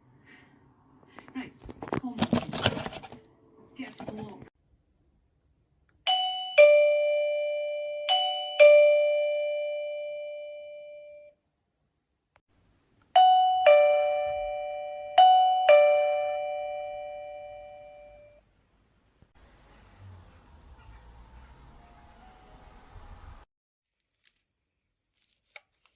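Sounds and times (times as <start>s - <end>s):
doorbell ding-dong chime: 6.1s - 11.3s, 13.2s - 18.4s.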